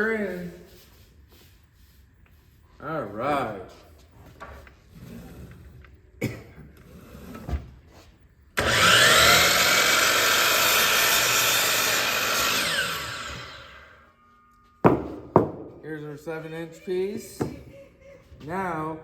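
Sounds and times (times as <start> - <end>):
power saw cutting wood: 8.6 - 14.0
knocks: 14.8 - 15.8.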